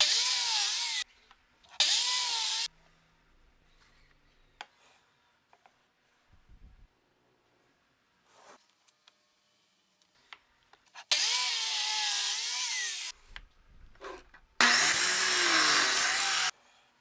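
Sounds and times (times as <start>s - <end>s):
circular saw cutting wood: 1.8s - 2.7s, 11.1s - 13.1s, 14.6s - 16.5s.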